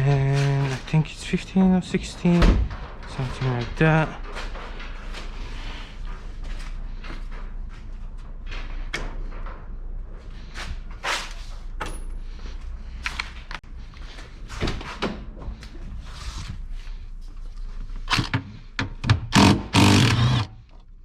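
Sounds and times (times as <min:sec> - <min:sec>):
rattling and scraping: 0:18.0 - 0:18.5.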